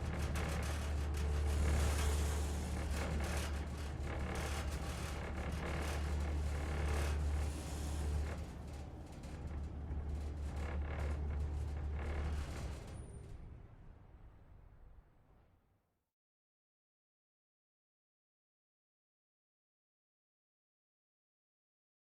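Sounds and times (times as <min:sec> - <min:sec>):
elevator car rattling and scraping: 0:00.0 - 0:13.6.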